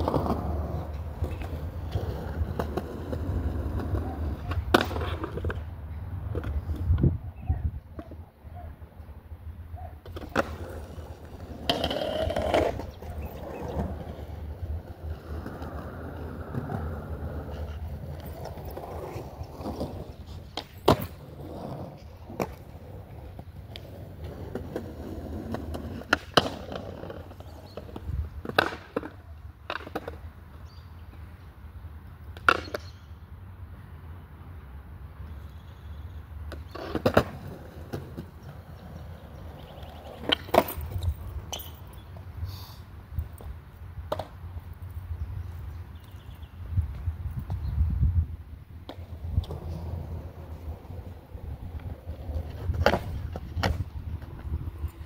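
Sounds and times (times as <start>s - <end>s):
skateboard clacking on ground: 0.0s - 7.2s, 10.0s - 31.3s, 32.2s - 33.0s, 36.4s - 42.3s, 43.2s - 45.1s, 48.7s - 55.0s
skateboard wheels rolling: 0.0s - 55.0s.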